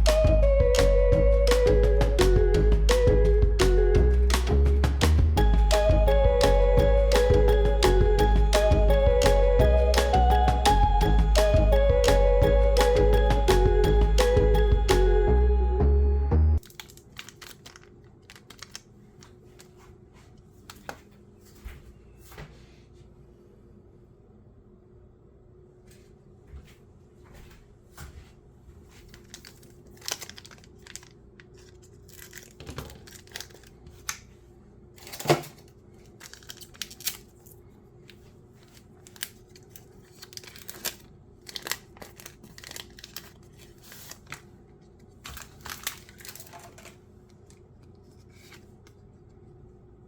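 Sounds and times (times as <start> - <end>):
foil wrappers crinkling and tearing: 16.6 - 19.8, 28.9 - 34.3, 35.0 - 48.7.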